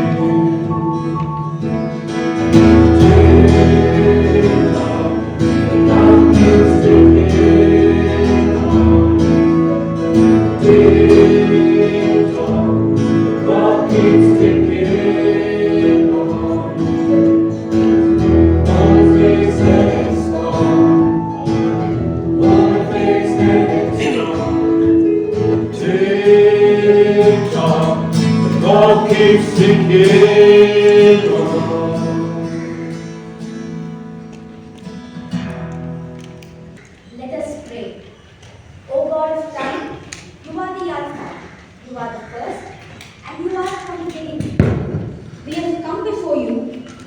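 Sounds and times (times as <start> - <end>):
gospel song with guitar: 0.0 - 37.1.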